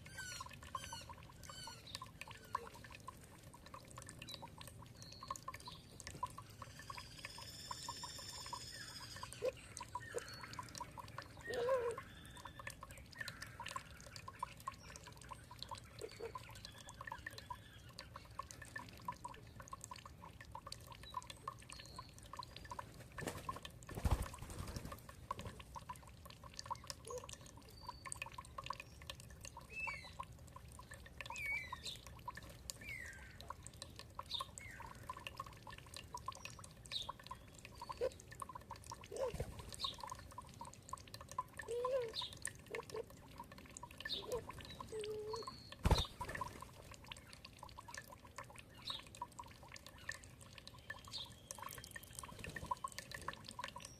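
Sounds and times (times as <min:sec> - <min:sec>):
songbirds calling: 0:00.0 - 0:03.0, 0:03.7 - 0:18.6, 0:25.9 - 0:30.3, 0:30.9 - 0:35.4, 0:36.2 - 0:41.0, 0:41.6 - 0:43.1, 0:43.8 - 0:47.5, 0:48.5 - 0:53.9
water dripping and trickling: 0:00.0 - 0:53.9.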